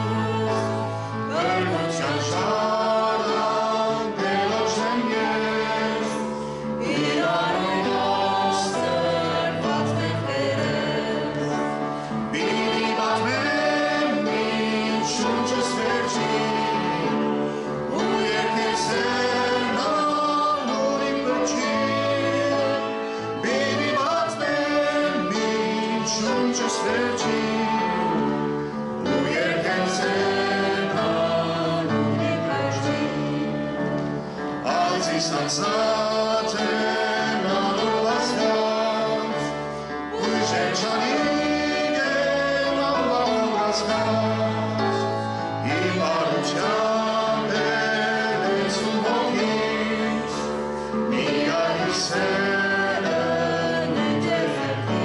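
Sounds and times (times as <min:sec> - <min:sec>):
choir singing a hymn: 0:00.0 - 0:55.0
instrumental accompaniment: 0:00.0 - 0:55.0.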